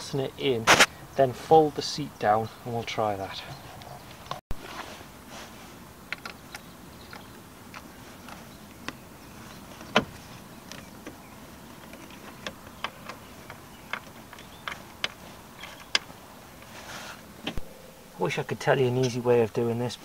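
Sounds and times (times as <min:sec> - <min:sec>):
seat parts clicking and knocking: 0:06.0 - 0:16.8, 0:17.4 - 0:17.7.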